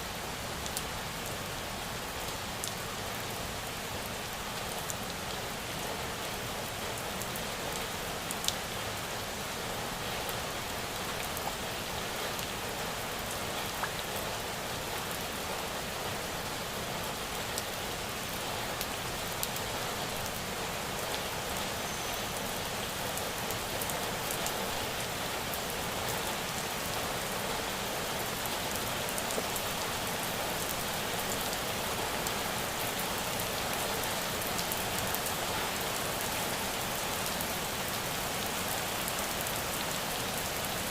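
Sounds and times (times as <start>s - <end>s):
rain falling: 0.0s - 40.9s
raindrops ticking on surface: 10.2s - 15.3s, 28.4s - 37.2s.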